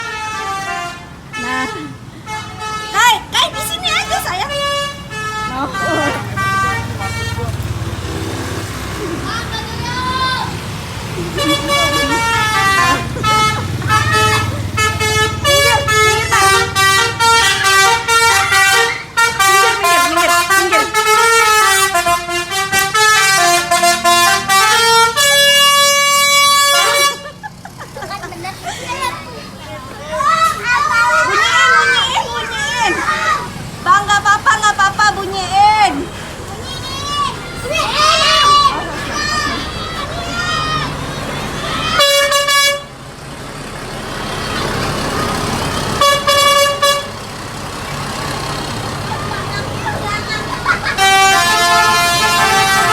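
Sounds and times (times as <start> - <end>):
musical bus air horn: 0.0 - 8.8, 11.1 - 27.5, 37.6 - 43.1, 44.8 - 49.0, 50.4 - 52.9
vehicle noise: 0.0 - 52.9.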